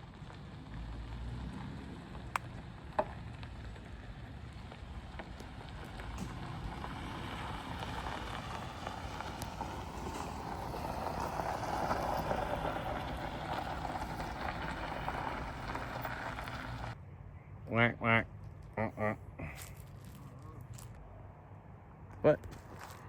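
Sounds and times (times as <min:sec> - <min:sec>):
low engine rumble: 0:00.0 - 0:17.5
road and tyre noise: 0:00.0 - 0:23.0.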